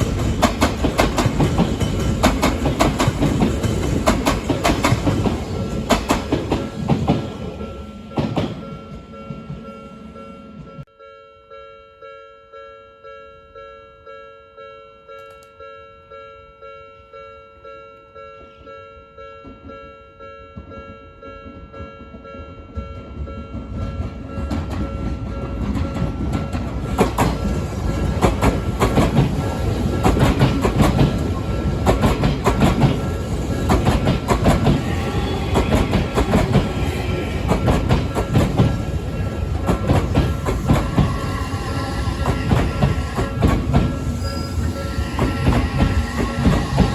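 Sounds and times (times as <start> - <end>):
train wheels clacking over rail joints: 0.0 - 9.6, 23.0 - 46.9
level-crossing alarm ringing: 0.0 - 46.9.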